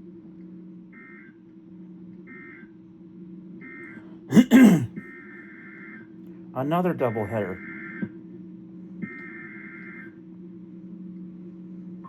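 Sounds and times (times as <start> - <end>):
faint steady hum: 0.0 - 12.0
man clearing his throat: 4.3 - 5.0.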